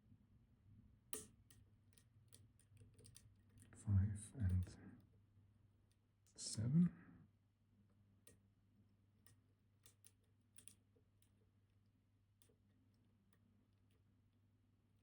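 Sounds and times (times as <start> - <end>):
faint lockpick clicks: 1.1 - 3.8, 9.2 - 11.4.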